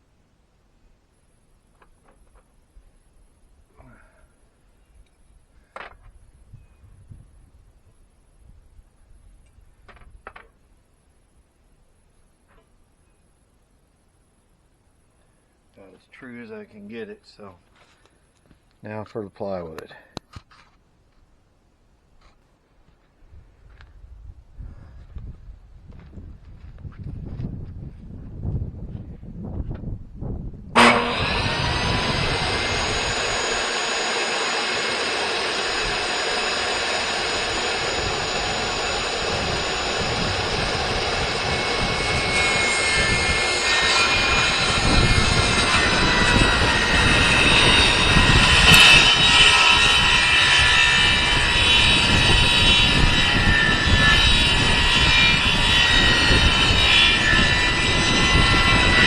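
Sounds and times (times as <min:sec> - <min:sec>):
saw blade cutting plywood: 0:30.8 - 0:59.0
table saw motor running: 0:30.8 - 0:59.0.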